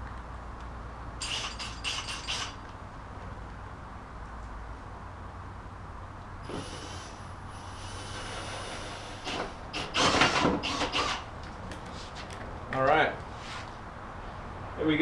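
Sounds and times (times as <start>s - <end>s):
drill whining: 1.2s - 2.6s, 6.5s - 11.3s
hole saw grinding metal: 1.2s - 2.6s, 8.1s - 11.3s.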